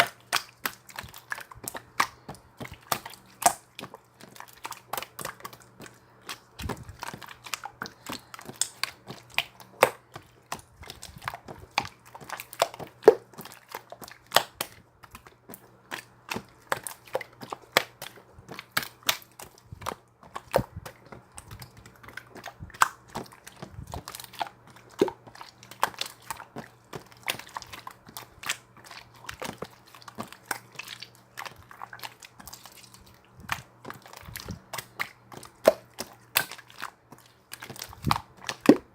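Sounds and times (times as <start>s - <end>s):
faint low hum: 0.0s - 38.9s
slime popping and clicking: 14.3s - 14.7s.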